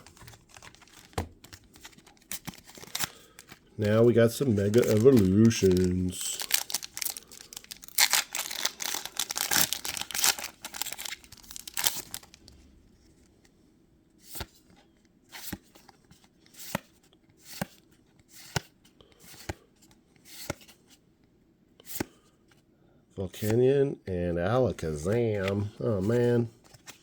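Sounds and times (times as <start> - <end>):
foil wrapper tearing and crinkling: 0.0 - 12.4
cards being flicked through: 0.1 - 11.2.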